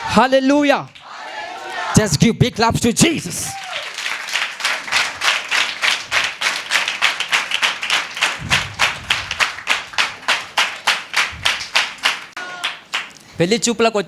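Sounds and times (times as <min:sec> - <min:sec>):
congregation clapping in rhythm: 0:02.5 - 0:13.2.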